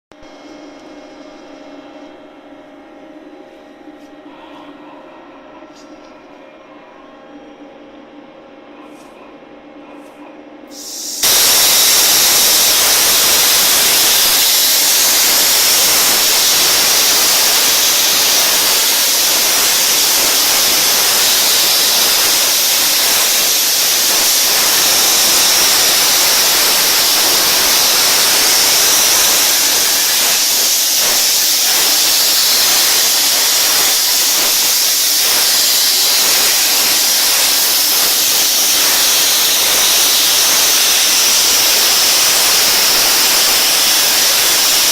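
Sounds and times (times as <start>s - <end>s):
plasma cutter hissing: 10.7s - 44.9s.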